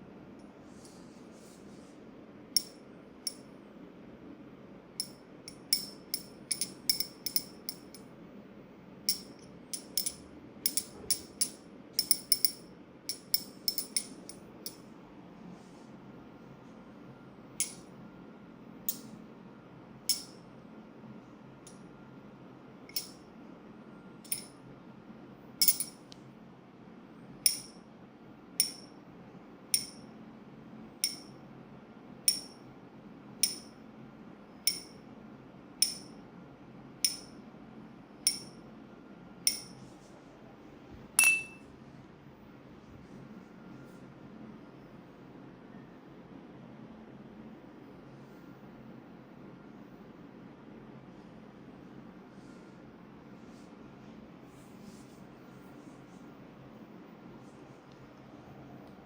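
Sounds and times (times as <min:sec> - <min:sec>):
sharp metallic clinks: 0:25.6 - 0:26.0, 0:41.2 - 0:41.6.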